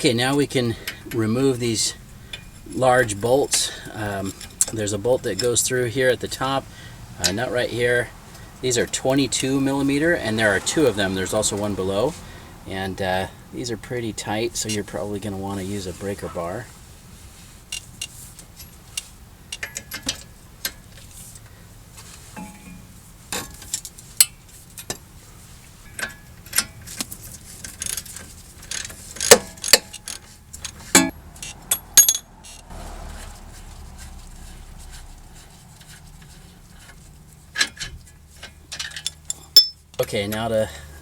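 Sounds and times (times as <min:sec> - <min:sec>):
hand tools clinking on metal: 0:27.6 - 0:32.7, 0:37.6 - 0:40.5.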